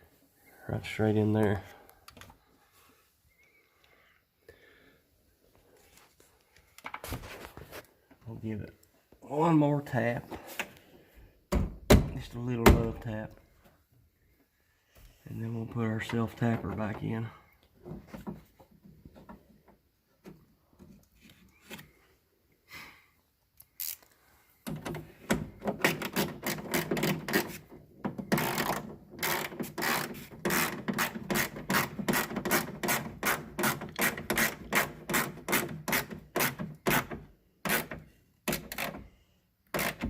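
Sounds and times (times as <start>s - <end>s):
screw rasping into sheet metal: 28.3s - 39.0s.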